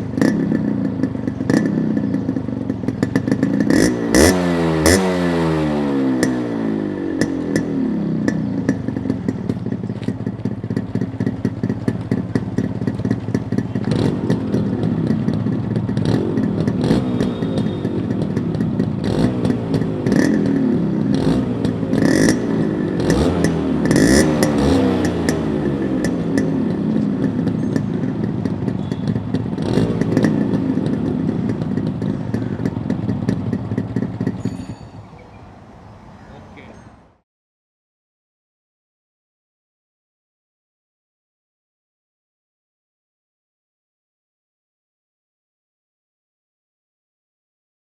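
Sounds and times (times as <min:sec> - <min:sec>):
motorcycle engine revving: 0:00.0 - 0:37.2.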